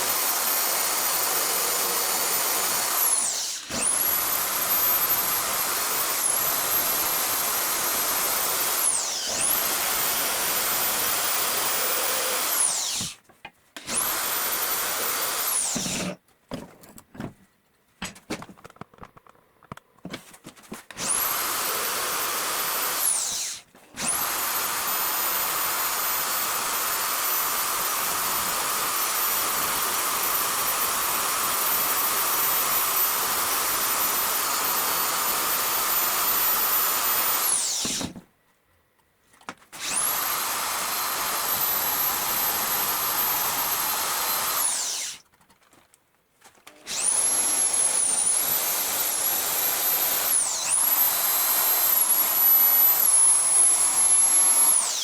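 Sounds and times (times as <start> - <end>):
high-pitched power tool whine: 0.0 - 13.2, 46.9 - 55.0.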